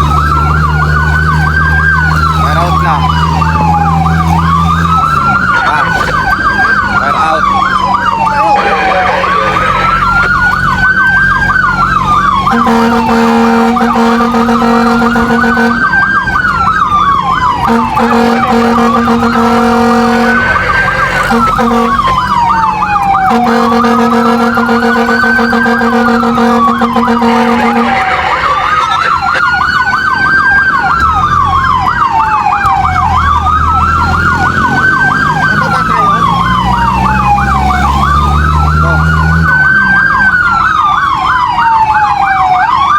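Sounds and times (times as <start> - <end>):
engine rumble: 0.0 - 42.9
fast warbling siren: 0.0 - 42.9
fire truck siren wailing: 0.0 - 42.9
low steady horn blasts: 12.4 - 16.0, 17.6 - 28.6.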